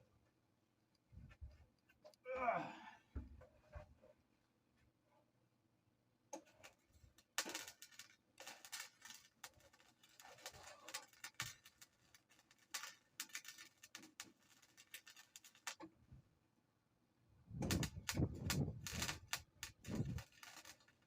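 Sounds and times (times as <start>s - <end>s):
welding arc crackling: 6.4s - 15.9s, 17.6s - 21.0s.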